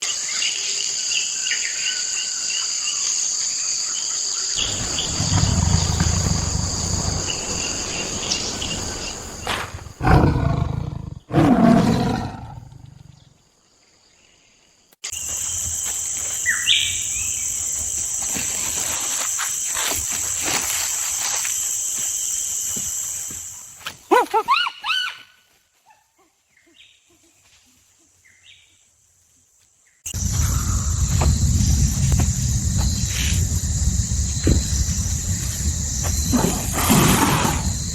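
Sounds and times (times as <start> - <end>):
insects buzzing: 0.0 - 24.1, 27.7 - 37.9
animal growls: 4.6 - 8.1, 10.0 - 13.3, 36.2 - 37.9.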